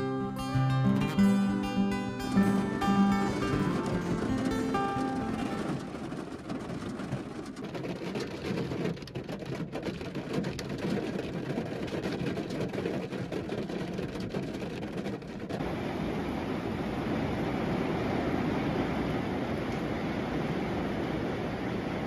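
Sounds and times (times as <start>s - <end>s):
heavy rain pattering: 0.0s - 22.0s.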